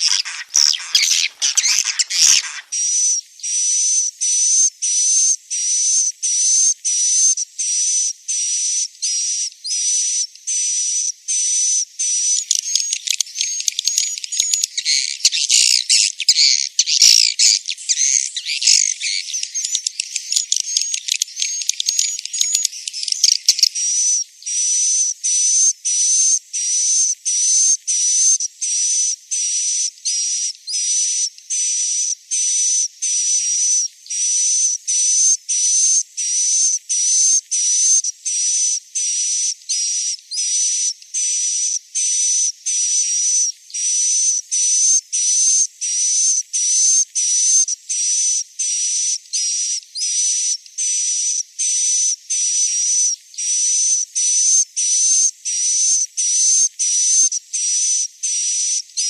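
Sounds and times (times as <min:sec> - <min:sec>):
birds twittering chatter: 0:00.0 - 0:02.8, 0:12.4 - 0:24.6
buzzy bird chirps with whistle: 0:00.0 - 0:02.8, 0:12.3 - 0:26.3.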